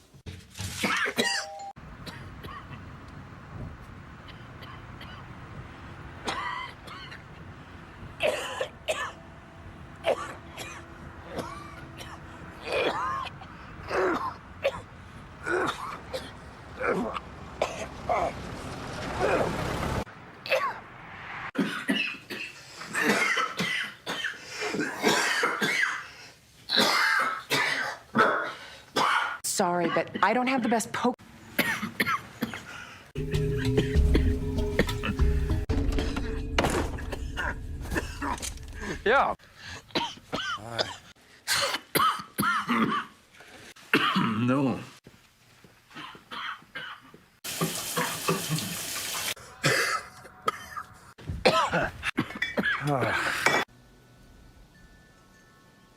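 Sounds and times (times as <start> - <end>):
man coughing: 1.0 - 1.5, 10.0 - 18.3, 21.6 - 26.0, 39.9 - 43.1, 49.5 - 53.7
man clearing throat: 10.0 - 14.8, 15.4 - 18.3, 40.0 - 43.1, 49.5 - 53.6
running water hissing: 47.4 - 49.4.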